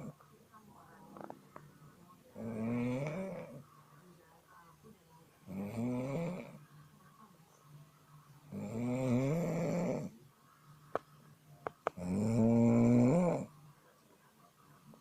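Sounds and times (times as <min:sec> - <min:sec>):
tuneful snoring: 0:02.4 - 0:03.6, 0:05.4 - 0:06.6, 0:08.5 - 0:10.2, 0:12.0 - 0:13.5.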